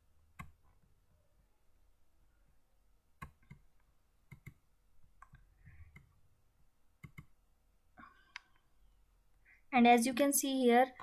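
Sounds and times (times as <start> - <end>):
computer mouse clicks: 0.4 - 0.8, 3.2 - 4.6, 5.2 - 6.2, 7.0 - 7.3.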